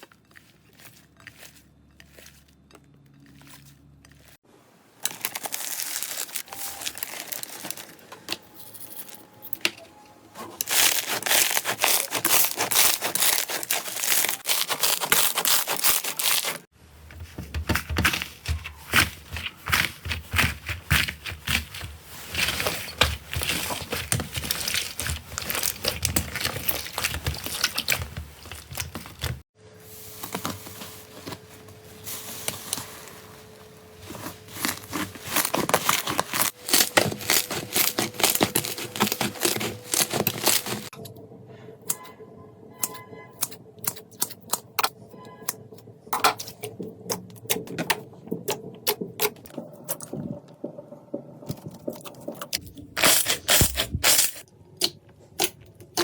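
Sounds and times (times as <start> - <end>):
slime crackling and popping: 10.6 - 16.6, 22.4 - 29.4, 34.6 - 40.9.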